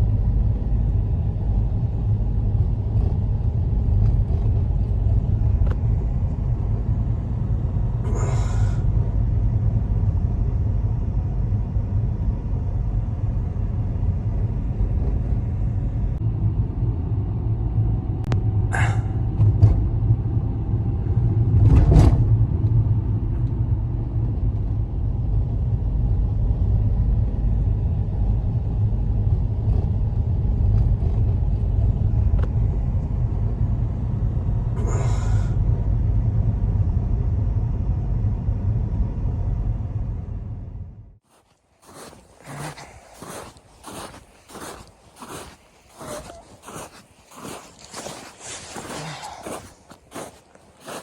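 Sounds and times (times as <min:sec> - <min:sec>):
blizzard wind rumble: 0:00.0 - 0:51.0
brief rustling scrapes: 0:41.3 - 0:51.0.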